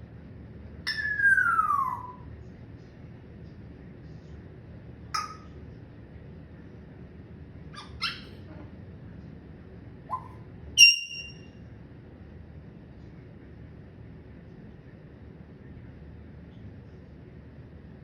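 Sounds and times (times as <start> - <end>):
parrot calls: 0.9 - 2.3, 5.2 - 5.6, 7.8 - 8.5, 10.1 - 11.4
parrot whistled note: 10.8 - 11.4.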